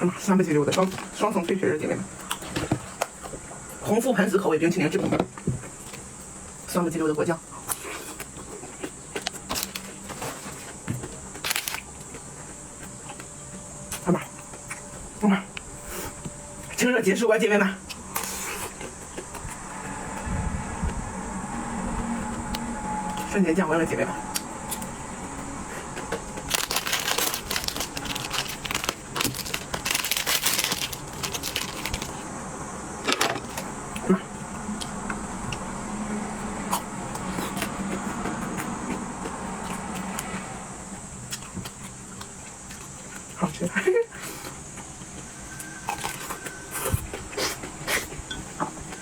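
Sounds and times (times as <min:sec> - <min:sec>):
crunching bites of ice cream bar: 0:09.2 - 0:10.2, 0:11.3 - 0:12.0, 0:26.4 - 0:32.3.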